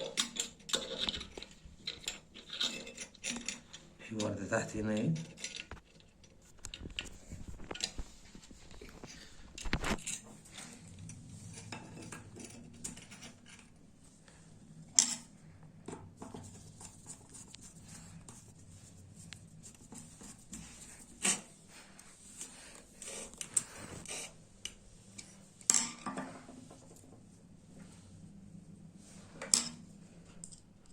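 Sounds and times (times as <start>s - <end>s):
small metal parts clinking: 0.0s - 4.3s, 4.9s - 6.8s.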